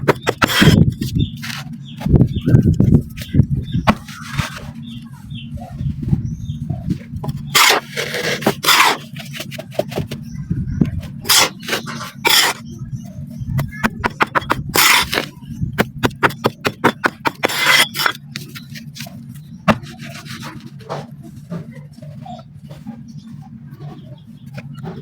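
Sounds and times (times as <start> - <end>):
dry sand crunching by hand: 3.2 - 5.0, 14.0 - 21.4.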